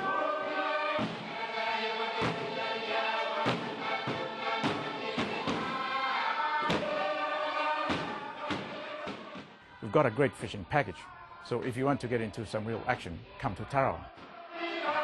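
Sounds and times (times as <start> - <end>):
voices singing: 0.0 - 15.0.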